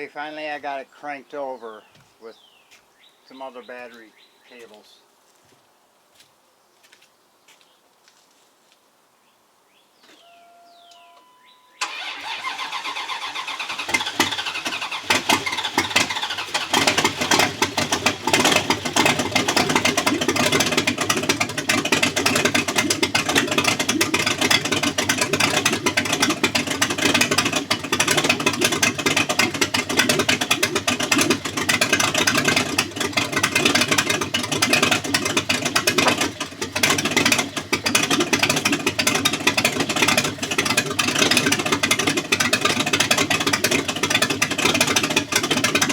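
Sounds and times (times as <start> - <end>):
car engine running loudly: 11.8 - 45.9
starter motor cranking: 11.8 - 45.9.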